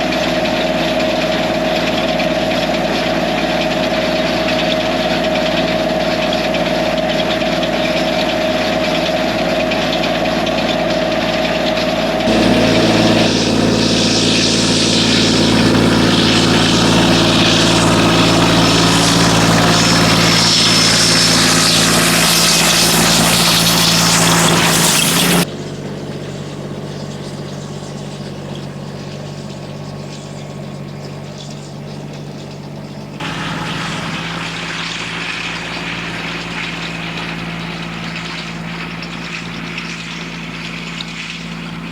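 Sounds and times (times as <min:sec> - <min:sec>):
diesel tractor engine running: 0:12.3 - 0:41.9.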